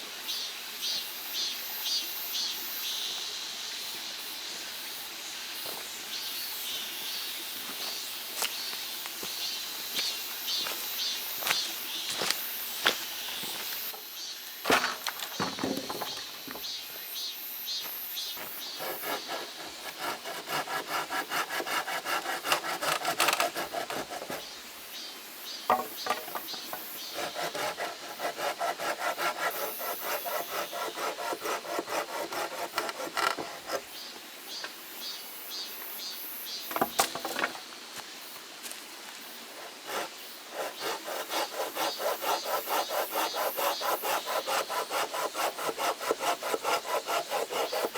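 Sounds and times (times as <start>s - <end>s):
hand saw cutting wood: 18.4s - 24.6s, 25.7s - 34.0s, 39.5s - 47.9s
knock: 25.7s - 26.5s.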